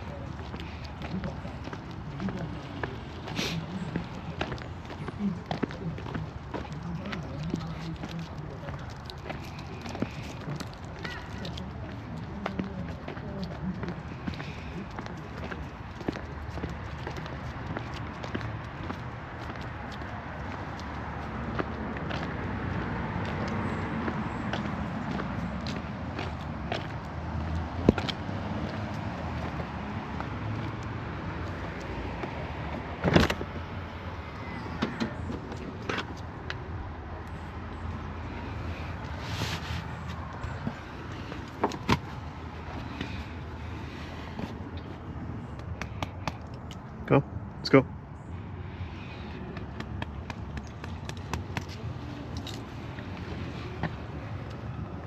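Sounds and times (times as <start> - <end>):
road traffic rumble: 0.0 - 55.0.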